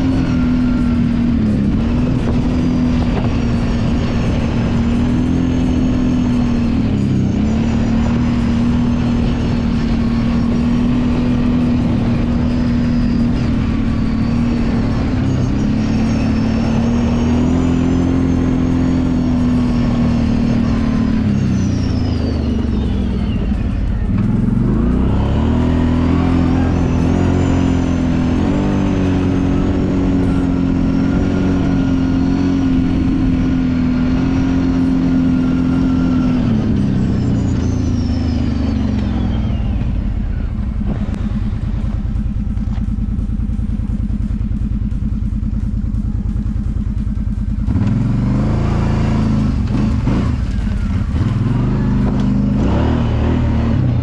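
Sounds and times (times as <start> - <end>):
atv engine running: 0.0 - 54.0.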